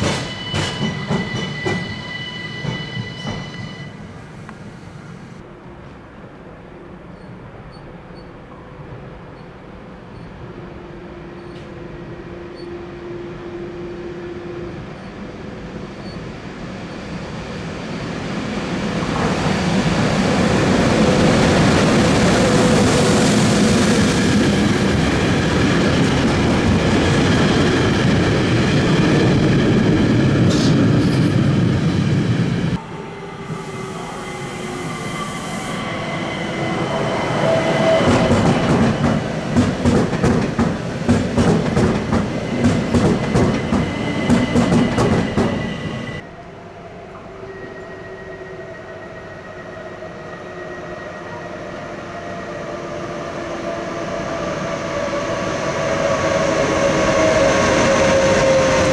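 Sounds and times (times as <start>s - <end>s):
train wheels rumbling on rails: 0.0s - 7.9s, 14.8s - 46.3s, 52.2s - 58.9s.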